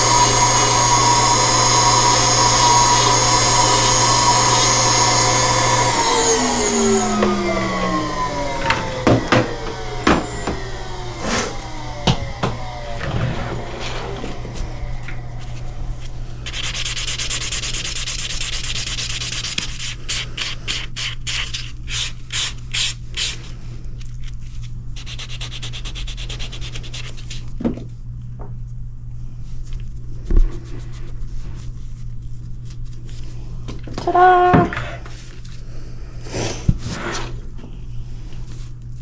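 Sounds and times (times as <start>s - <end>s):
nail file rubbing: 15.4s - 23.6s, 25.0s - 27.5s.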